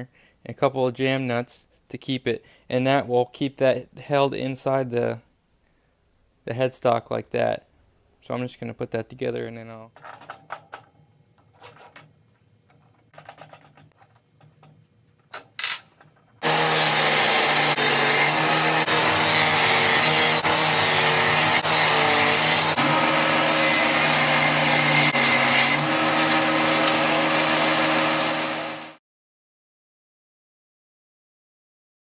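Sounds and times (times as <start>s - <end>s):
parts clicking and knocking: 9.4s - 16.4s, 24.1s - 27.2s
electric drill running: 16.4s - 29.0s.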